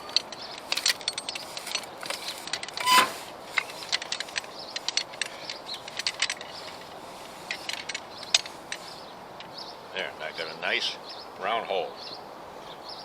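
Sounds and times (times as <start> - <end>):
loud scrape: 2.2 - 3.9
brief squeak: 2.8 - 3.2.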